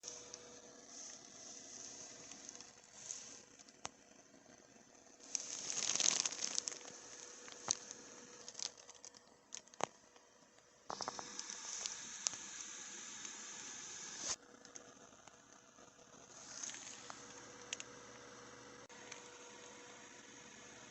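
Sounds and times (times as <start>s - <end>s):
packaging rustling and crinkling: 1.0s - 3.8s, 5.2s - 10.0s, 10.9s - 12.4s, 16.3s - 17.8s.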